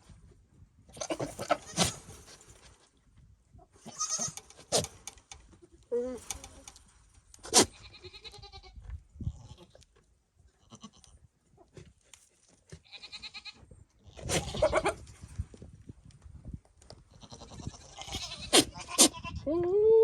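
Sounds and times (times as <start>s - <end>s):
goat rutting calls: 0.9s - 2.1s.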